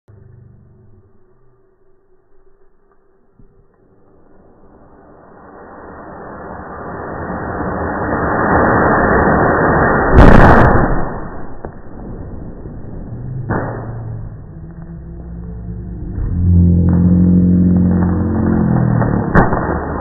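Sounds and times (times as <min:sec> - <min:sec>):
firework rocket rushing: 0:04.0 - 0:14.8, 0:16.9 - 0:20.0
loud deep explosion: 0:06.3 - 0:20.0.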